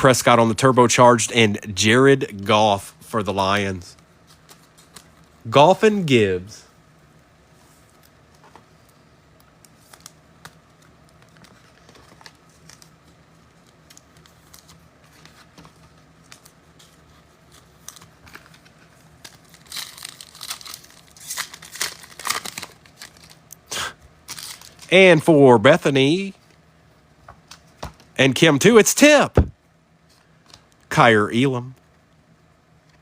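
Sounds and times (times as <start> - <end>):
foil wrappers tearing and crinkling: 17.5 - 23.6, 24.2 - 24.9.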